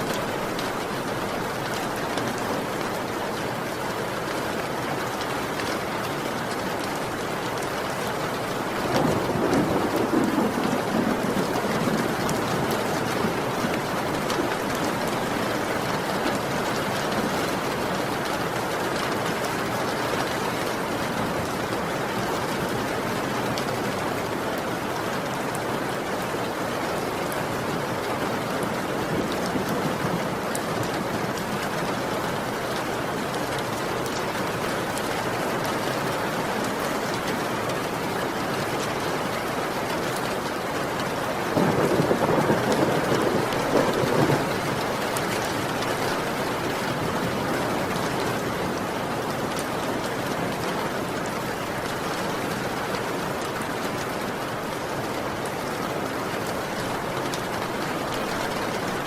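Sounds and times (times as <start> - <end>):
heavy rain falling: 0.0 - 59.0
roll of thunder: 8.9 - 13.8, 41.6 - 44.9.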